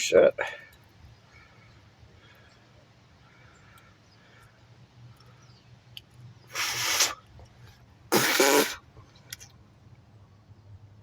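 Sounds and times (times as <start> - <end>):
man coughing: 8.2 - 8.8.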